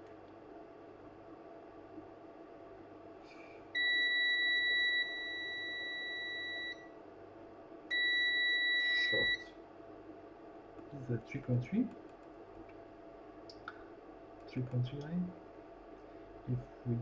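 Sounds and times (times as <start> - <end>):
multimeter continuity beep: 3.8 - 6.8, 7.9 - 9.5.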